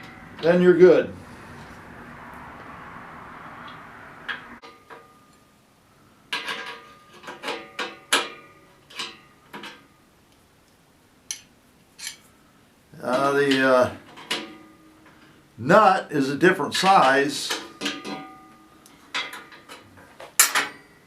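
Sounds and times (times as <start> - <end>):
steady background noise: 0.0 - 21.0
bolts and tools clinking on metal: 6.3 - 9.9, 16.8 - 21.0.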